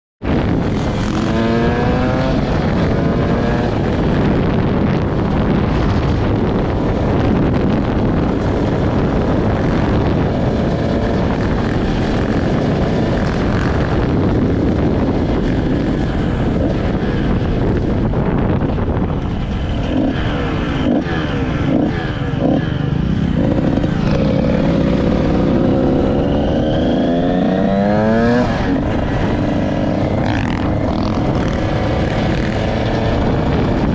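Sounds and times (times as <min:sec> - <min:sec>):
low rushing noise: 0:00.2 - 0:33.9
dirt bike engine revving: 0:00.7 - 0:05.4, 0:19.8 - 0:33.9.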